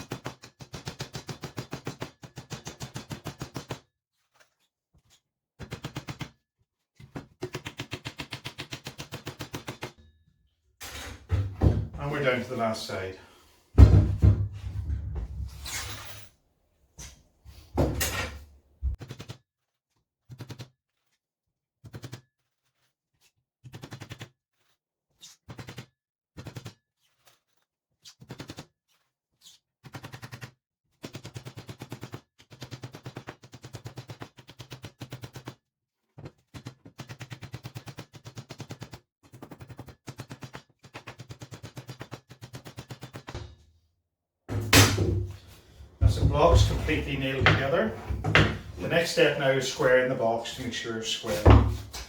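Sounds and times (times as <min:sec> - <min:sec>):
hammer driving nails into wood: 0:44.5 - 0:45.3.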